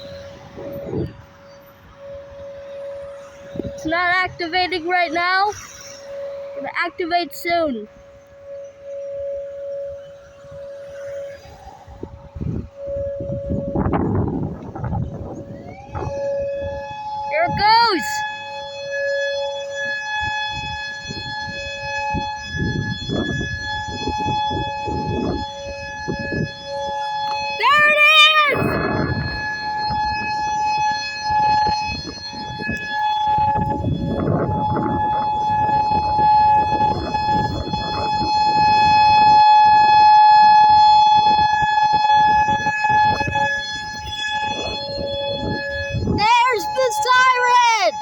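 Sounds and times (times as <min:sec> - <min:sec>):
warning siren steady tone: 0:00.0 - 0:48.0
low rumbling noise: 0:28.7 - 0:30.7.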